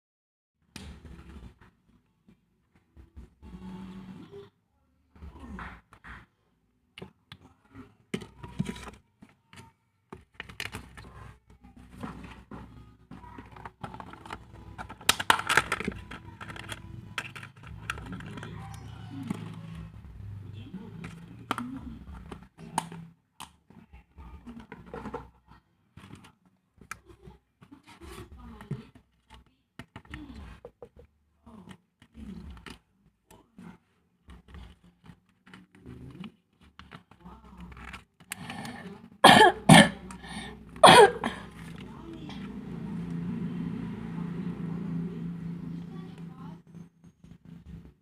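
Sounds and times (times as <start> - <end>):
paper and stationery rustling: 8.1 - 19.8.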